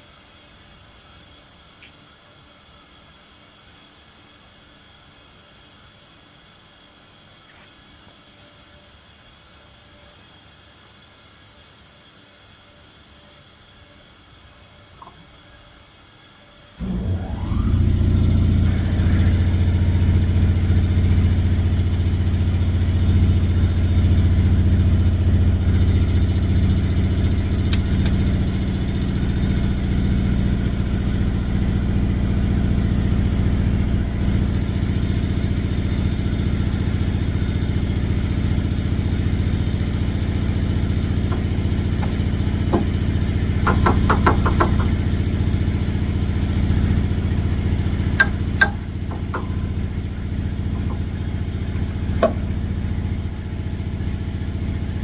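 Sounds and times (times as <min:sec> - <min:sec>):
engine running steadily: 0:16.8 - 0:55.0
fast run of clicks: 0:40.2 - 0:45.8, 0:46.7 - 0:52.7.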